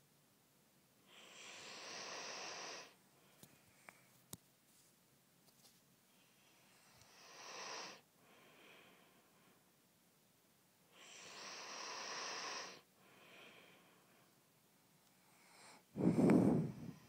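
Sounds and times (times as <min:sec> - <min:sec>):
rasping snores: 0:01.1 - 0:02.9, 0:07.1 - 0:08.0, 0:11.0 - 0:12.8
soft breath: 0:06.1 - 0:09.8, 0:10.9 - 0:17.0.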